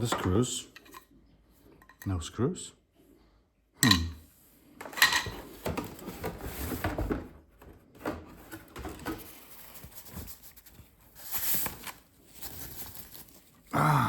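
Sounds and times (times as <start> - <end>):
packaging rustling: 8.4 - 13.7.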